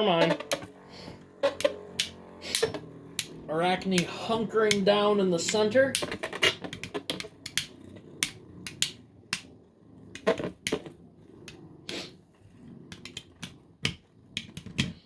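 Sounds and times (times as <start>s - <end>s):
spinning tops clacking: 0.0s - 9.5s
spinning tops whirring: 0.0s - 15.0s.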